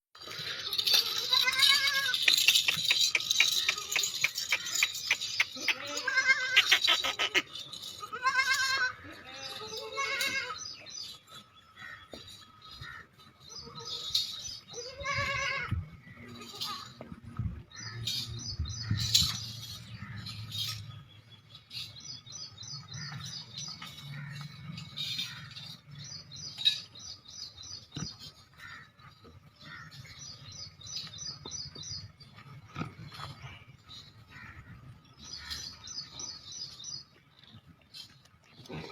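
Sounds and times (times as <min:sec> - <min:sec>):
birds chirping: 0:00.2 - 0:17.0, 0:17.7 - 0:38.9
goat kid bleating: 0:00.6 - 0:02.2, 0:05.5 - 0:10.6, 0:14.7 - 0:16.9.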